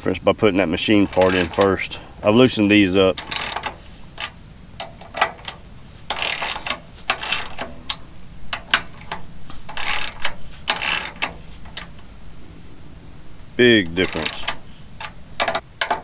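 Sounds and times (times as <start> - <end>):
ratchet wrench clicking: 1.1 - 1.9, 3.1 - 12.0, 14.0 - 16.0.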